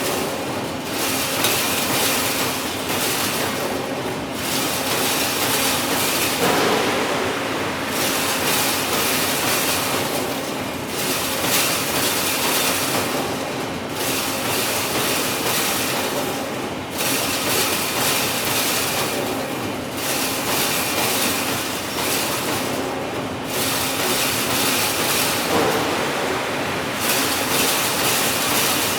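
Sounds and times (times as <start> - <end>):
wire fence machine running: 5.9 - 10.3, 24.5 - 28.9.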